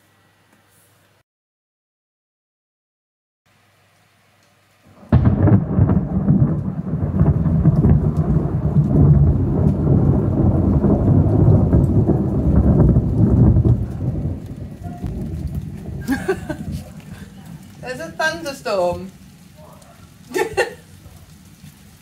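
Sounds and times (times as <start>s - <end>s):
thunder rumbling: 4.9s - 22.0s.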